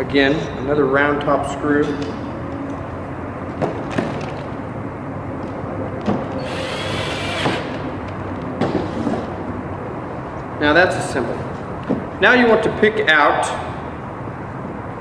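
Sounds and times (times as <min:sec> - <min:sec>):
power drill motor whine: 0:06.4 - 0:07.8.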